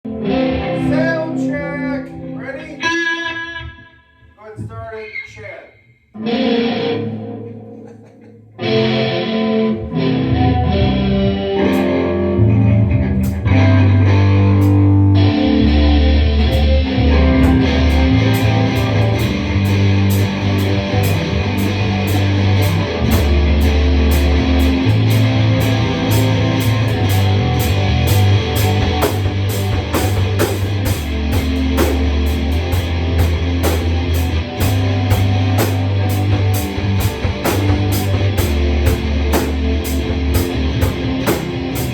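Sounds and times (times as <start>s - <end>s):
electric guitar: 0.0s - 41.9s
heavy bass notes: 6.2s - 41.9s
drum kit beat: 15.8s - 41.9s.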